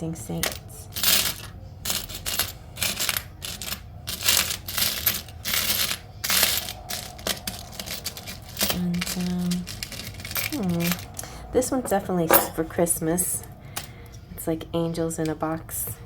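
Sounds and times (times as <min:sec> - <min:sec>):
small charms clinking and rattling: 0:01.0 - 0:11.2.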